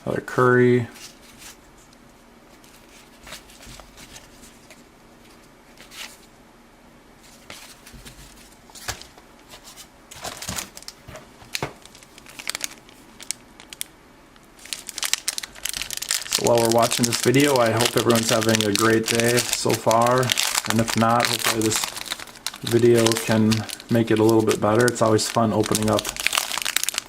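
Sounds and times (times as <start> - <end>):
wrappers rustling and crinkling: 7.3 - 13.9, 14.5 - 27.0.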